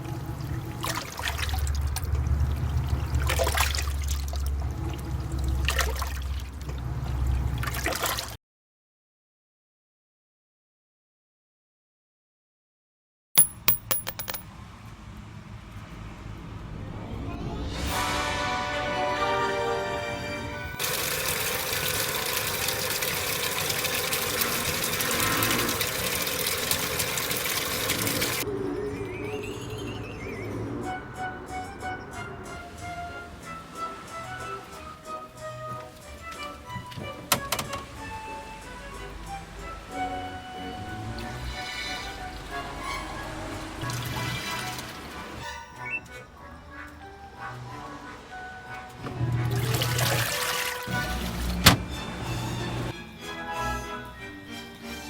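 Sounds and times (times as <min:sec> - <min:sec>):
water splashing in washing machine: 0:00.0 - 0:08.4, 0:20.8 - 0:28.4, 0:43.3 - 0:45.4, 0:49.0 - 0:52.9.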